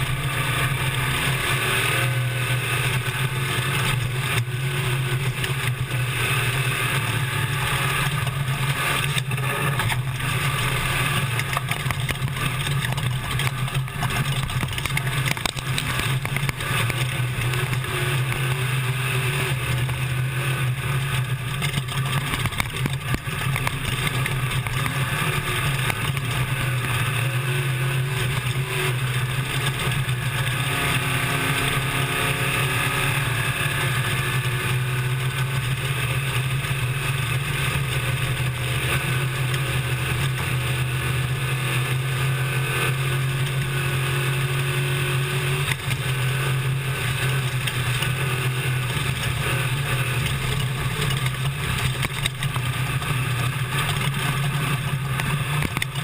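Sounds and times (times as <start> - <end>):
truck engine revving: 0.0 - 56.0
wind and tyre noise: 0.0 - 56.0
rattling: 7.2 - 18.6.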